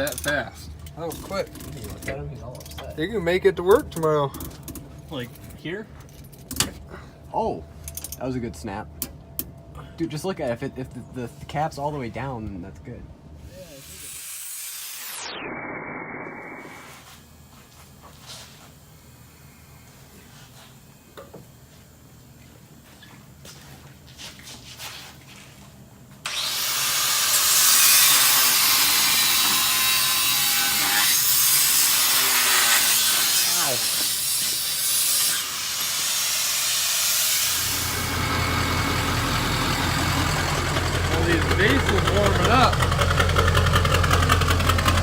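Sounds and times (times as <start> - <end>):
diesel engine idling: 37.6 - 45.0.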